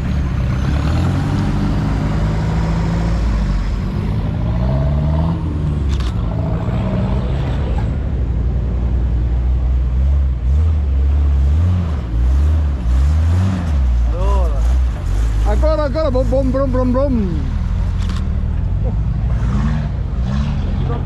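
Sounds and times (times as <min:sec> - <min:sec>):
engine revving: 0:00.0 - 0:21.0.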